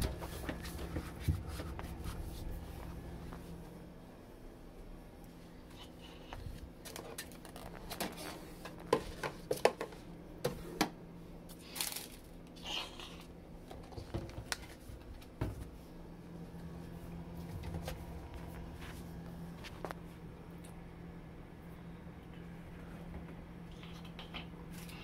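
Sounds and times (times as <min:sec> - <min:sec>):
steady low hum: 0:00.0 - 0:25.0
items knocking on fridge shelves: 0:07.9 - 0:11.0, 0:15.2 - 0:15.7
plastic packaging rustle: 0:11.6 - 0:12.4.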